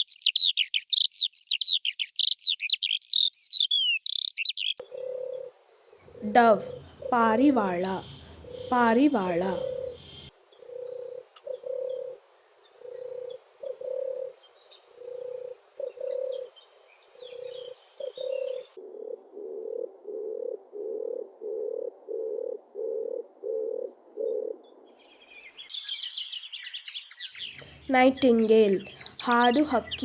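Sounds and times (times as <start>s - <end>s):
small birds chirping: 0.0s - 5.0s, 6.0s - 18.7s, 24.9s - 30.0s
dove cooing: 4.8s - 5.5s, 6.1s - 12.2s, 12.8s - 16.5s, 17.3s - 24.8s, 27.6s - 30.0s.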